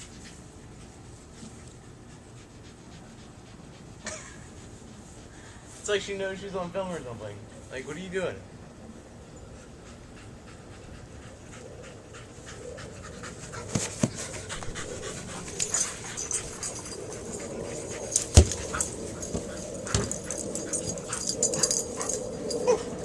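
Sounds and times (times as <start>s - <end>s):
dog panting: 0.0s - 6.1s, 9.5s - 23.0s
sharp thumps: 18.2s - 20.6s.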